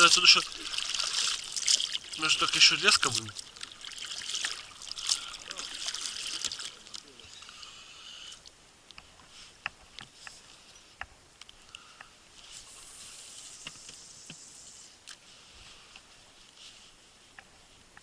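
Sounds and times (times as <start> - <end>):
water dripping: 0.0 - 7.1
moving water hiss: 0.0 - 17.3.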